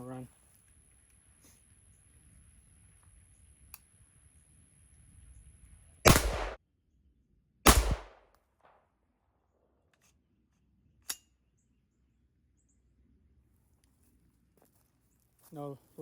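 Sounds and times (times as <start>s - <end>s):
rifle shots: 6.0s - 6.6s, 7.7s - 8.2s.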